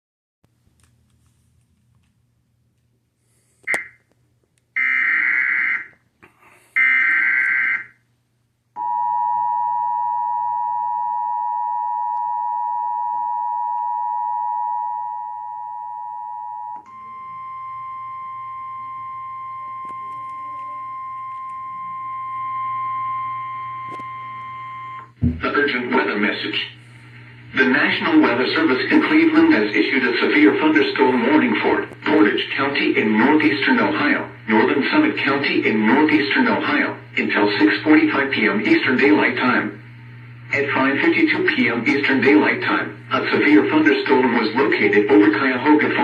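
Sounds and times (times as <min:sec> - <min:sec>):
click: 0:00.8 - 0:01.0
single steady tone: 0:08.8 - 0:25.6.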